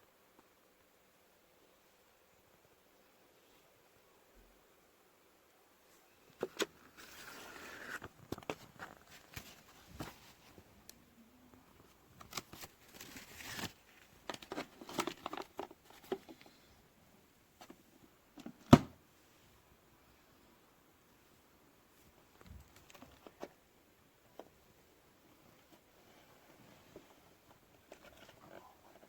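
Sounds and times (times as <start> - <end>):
rustling: 5.8 - 16.9, 21.2 - 29.0.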